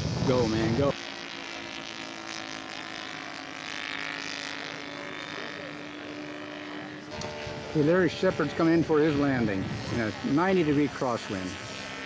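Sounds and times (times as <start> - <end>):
model airplane engine droning: 0.0 - 12.0.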